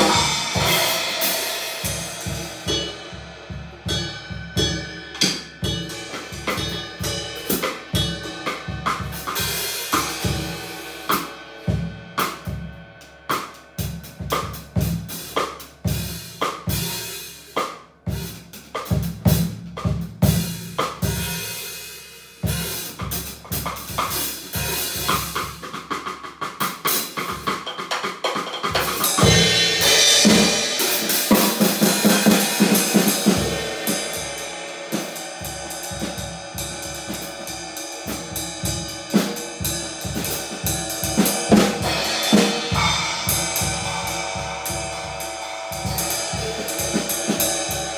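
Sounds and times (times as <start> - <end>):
snare drum: 0.0 - 2.9, 25.0 - 36.2, 40.1 - 44.5
bass drum: 0.0 - 12.8, 28.7 - 47.9
cymbal strokes: 0.0 - 13.8, 29.0 - 47.9.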